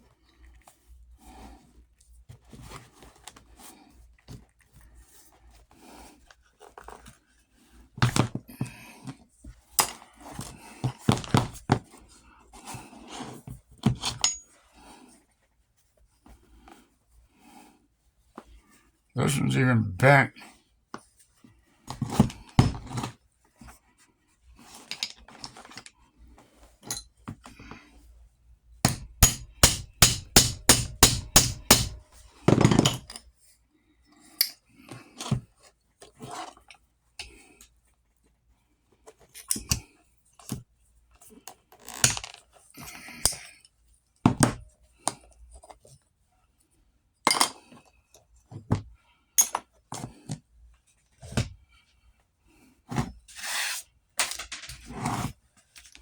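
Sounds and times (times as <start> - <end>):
sharp strikes on metal: 28.9 - 32.1
knocks taps and clinks: 28.9 - 33.2
scraping and handling: 53.3 - 55.9.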